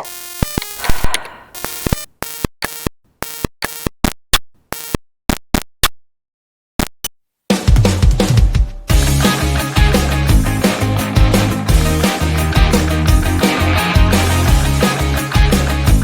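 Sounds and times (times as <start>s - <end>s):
electronic track with heavy beat: 7.6s - 16.0s.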